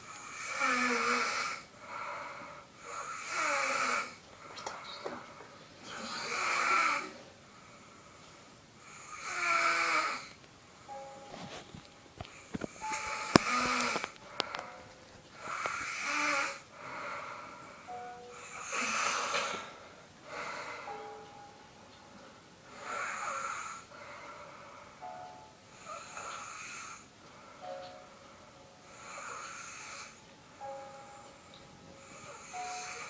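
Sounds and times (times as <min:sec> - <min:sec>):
person snoring: 0:00.2 - 0:04.2, 0:05.9 - 0:07.2, 0:08.8 - 0:10.4, 0:12.3 - 0:14.6, 0:15.4 - 0:17.5, 0:18.3 - 0:21.0, 0:22.7 - 0:24.2, 0:32.0 - 0:33.0.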